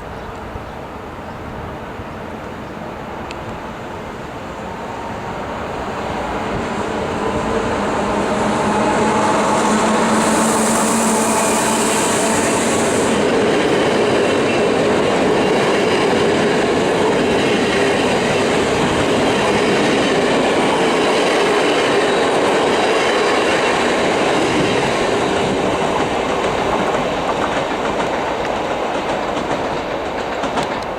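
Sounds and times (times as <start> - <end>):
high hiss: 3.5 - 13.6
train wheels clattering: 6.6 - 30.9.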